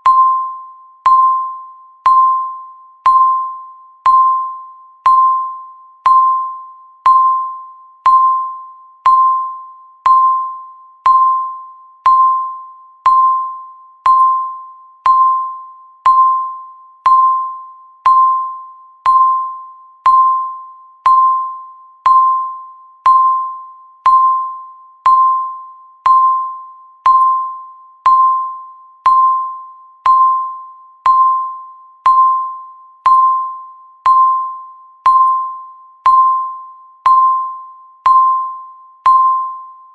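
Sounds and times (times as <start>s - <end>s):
countdown timer beeping: 0.0s - 39.8s.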